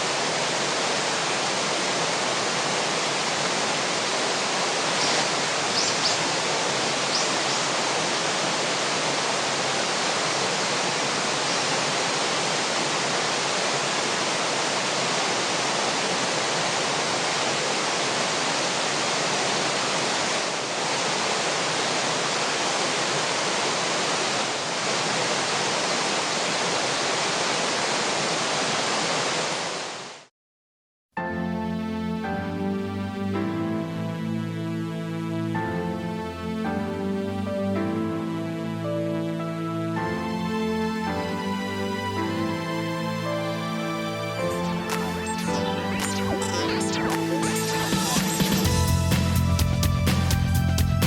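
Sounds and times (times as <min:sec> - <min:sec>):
river water rushing: 0:00.0 - 0:30.3.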